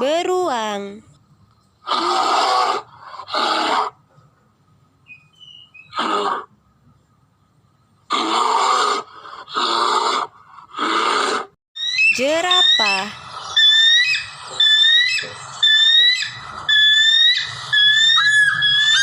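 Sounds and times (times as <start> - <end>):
bear growling: 5.9 - 6.5, 8.1 - 11.6.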